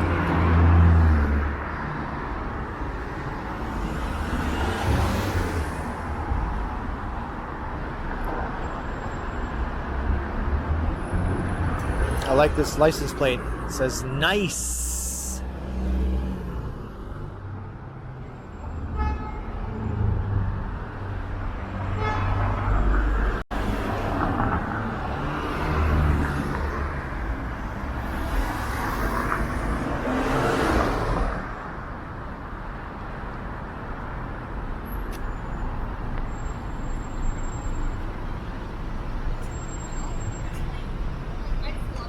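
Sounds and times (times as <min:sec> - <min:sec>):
cars passing: 0:00.0 - 0:42.0.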